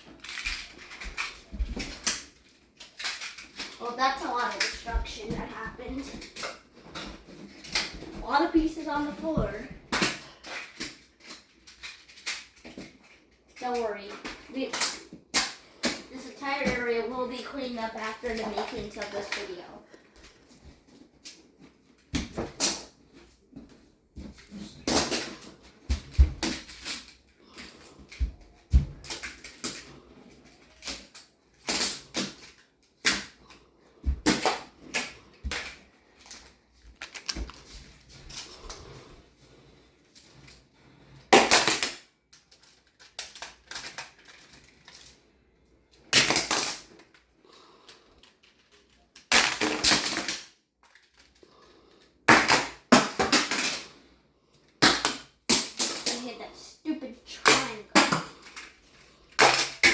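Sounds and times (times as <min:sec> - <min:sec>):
plastic tiles clattering: 0:00.0 - 0:05.4, 0:09.9 - 0:14.1, 0:34.3 - 0:38.8, 0:41.3 - 0:45.2, 0:46.1 - 0:47.3, 0:47.9 - 0:51.4.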